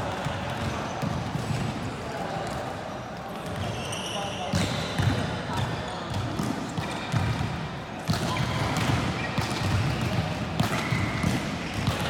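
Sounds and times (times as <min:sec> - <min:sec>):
murmur of a large hall: 0:00.0 - 0:12.0
volleyball hits and bounces: 0:06.1 - 0:12.0.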